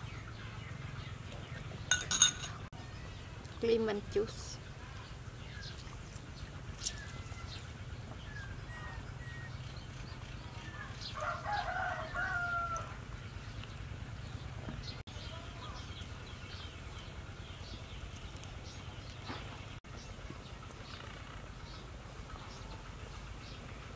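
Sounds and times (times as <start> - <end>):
rooster crowing: 11.1 - 13.1.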